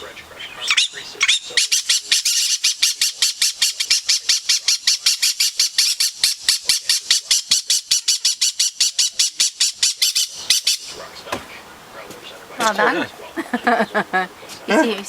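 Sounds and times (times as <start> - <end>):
parrot harsh chirps: 0.0 - 11.0.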